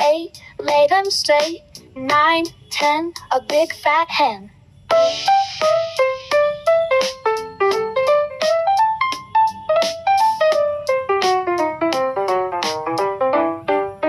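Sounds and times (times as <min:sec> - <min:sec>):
piano melody: 0:04.9 - 0:14.0.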